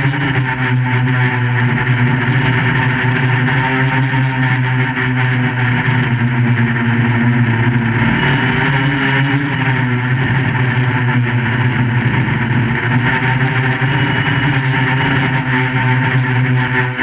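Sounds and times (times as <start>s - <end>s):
quadcopter buzzing: 0.0s - 17.0s.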